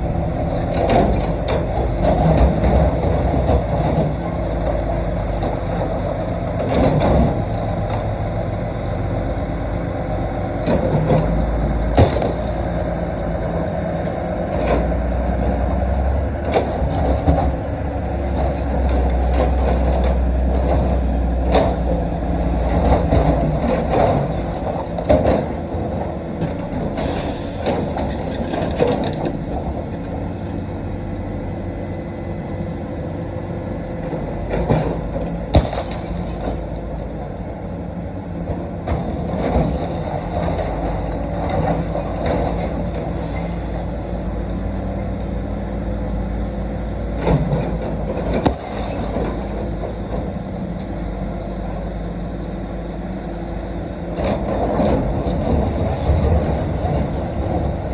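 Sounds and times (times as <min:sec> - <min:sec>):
excavator diesel engine: 0:00.0 - 0:57.9
hiss: 0:27.0 - 0:28.7, 0:43.2 - 0:44.3.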